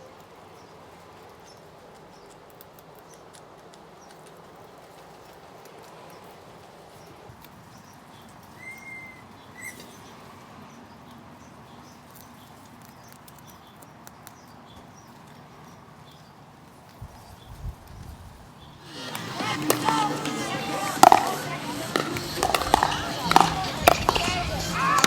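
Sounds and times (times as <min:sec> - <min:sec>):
footsteps walking: 0:18.8 - 0:25.0.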